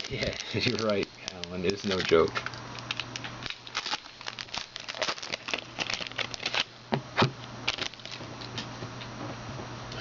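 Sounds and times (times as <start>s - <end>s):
plastic wrapping crinkling: 0.0s - 6.8s, 7.6s - 8.6s.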